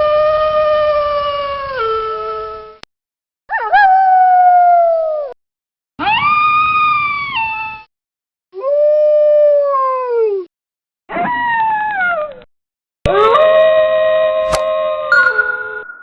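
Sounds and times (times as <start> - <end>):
steady ringing tone: 15.1 - 16.0.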